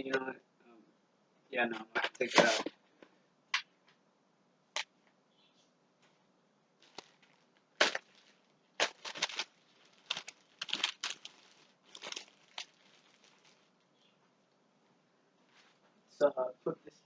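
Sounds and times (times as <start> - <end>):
packaging crinkling: 6.8 - 13.8.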